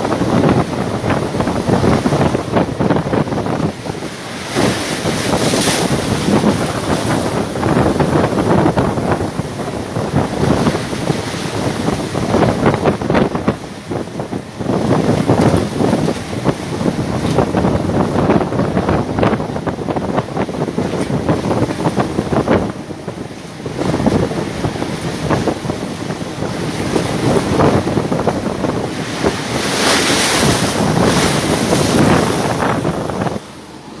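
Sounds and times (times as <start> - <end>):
waves crashing against ship hull: 0.0 - 34.0
wind buffeting microphone: 0.0 - 34.0.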